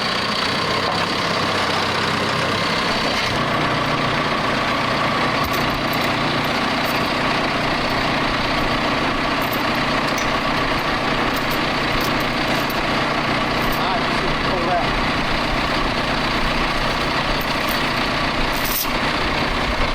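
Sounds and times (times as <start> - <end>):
heavy vehicle engine rumbling: 0.0 - 19.9.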